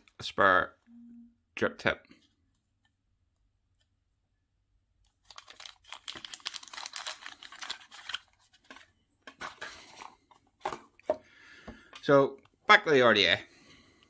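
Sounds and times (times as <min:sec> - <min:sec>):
plastic packaging crinkling and clicking: 0:05.0 - 0:10.8.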